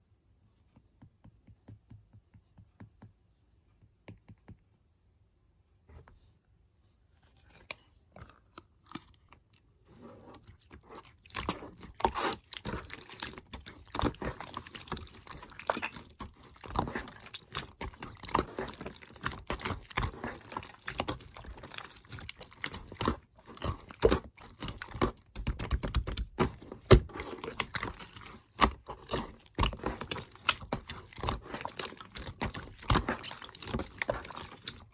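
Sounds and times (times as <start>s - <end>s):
slime crackling and popping: 11.4s - 34.9s.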